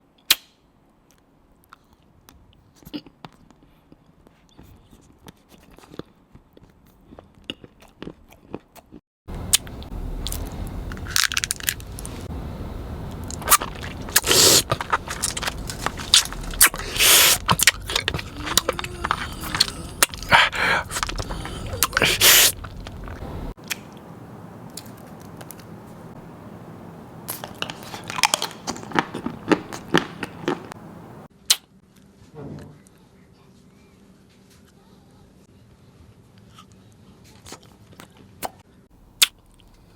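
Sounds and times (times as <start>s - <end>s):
chewing crunchy food: 1.7s - 12.3s, 13.2s - 24.0s, 27.3s - 30.8s.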